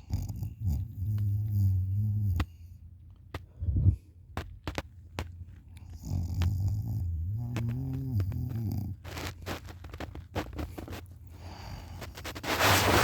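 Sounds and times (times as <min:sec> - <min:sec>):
person snoring: 0:06.0 - 0:10.0
short snort: 0:06.0 - 0:13.0.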